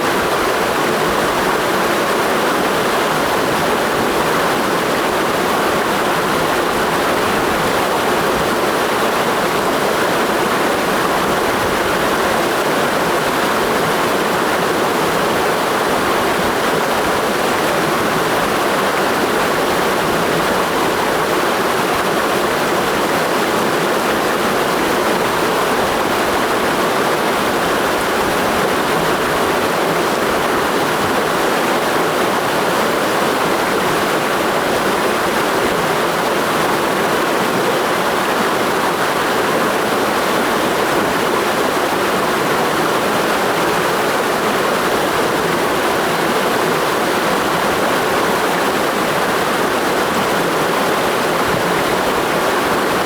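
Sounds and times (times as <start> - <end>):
stream rushing: 0.0 - 53.0.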